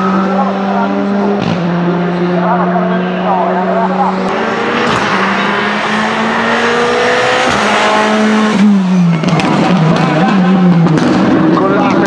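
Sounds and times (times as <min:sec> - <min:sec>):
rally car engine revving: 0:04.2 - 0:10.3.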